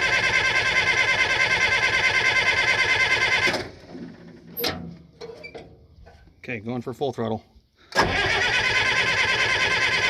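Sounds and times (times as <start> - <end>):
diesel engine cranking: 0.0 - 4.8, 7.9 - 10.0.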